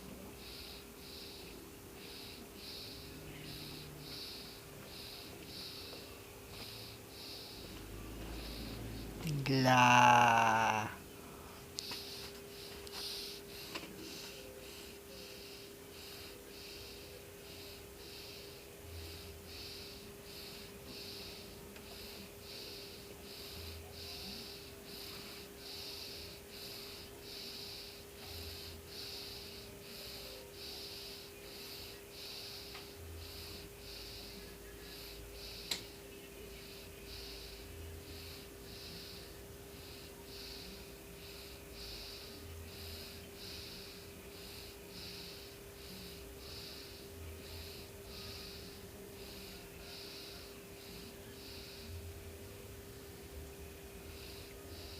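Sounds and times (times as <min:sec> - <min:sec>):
cat purring: 0:00.0 - 0:11.0, 0:36.4 - 0:52.0
faint steady hum: 0:00.0 - 0:54.9
cat breathing: 0:00.4 - 0:09.7.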